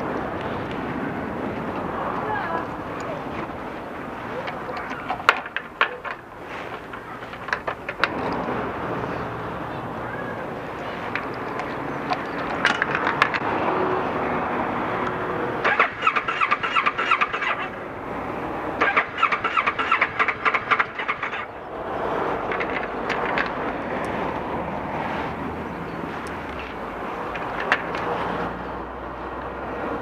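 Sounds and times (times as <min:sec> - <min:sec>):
motorcycle engine cranking: 0:00.9 - 0:13.8, 0:15.6 - 0:17.9, 0:18.8 - 0:24.5, 0:25.6 - 0:28.4.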